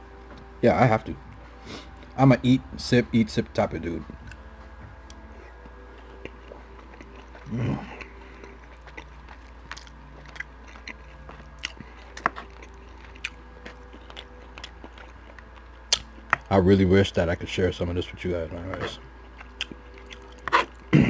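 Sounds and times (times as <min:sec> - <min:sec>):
close chewing: 0:04.0 - 0:17.2, 0:18.0 - 0:21.0.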